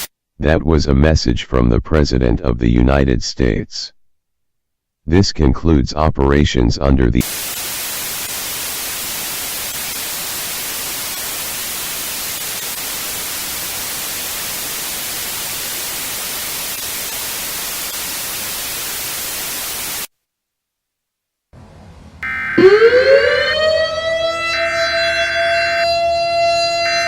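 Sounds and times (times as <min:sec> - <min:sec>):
static hiss: 0:07.2 - 0:20.1.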